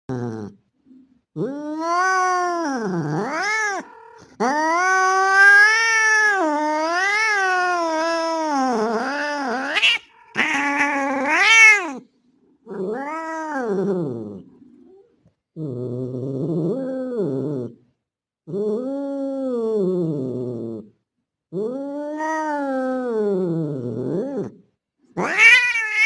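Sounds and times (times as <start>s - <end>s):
cat caterwauling: 1.4s - 12.0s, 12.8s - 13.8s, 25.2s - 26.0s.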